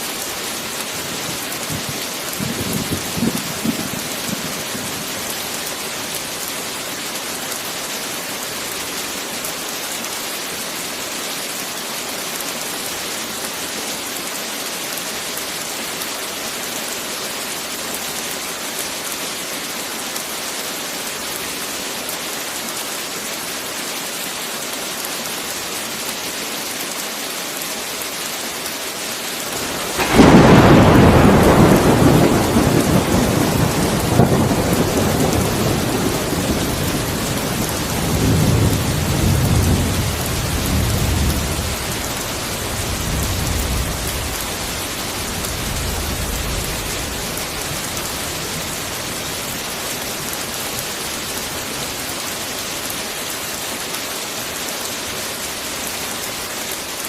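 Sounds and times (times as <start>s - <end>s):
heavy rain: 0.0s - 57.0s
thunder clap rumbling: 1.6s - 5.0s, 29.6s - 49.2s.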